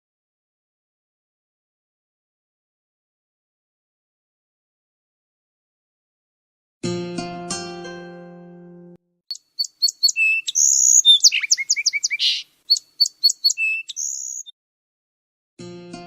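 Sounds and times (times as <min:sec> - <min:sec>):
bird chirps and trills: 0:09.3 - 0:14.5.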